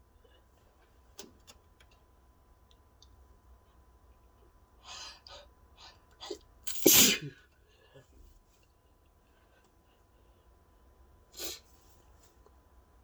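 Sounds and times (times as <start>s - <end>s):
person sneezing: 6.7s - 7.4s, 11.4s - 11.7s
person sniffing: 11.4s - 11.8s.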